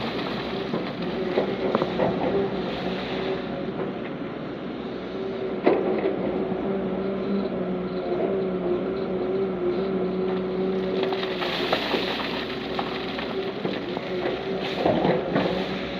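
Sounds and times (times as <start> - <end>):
heavy diesel engine running: 0.0 - 15.9
rough mechanical noise: 0.0 - 15.9.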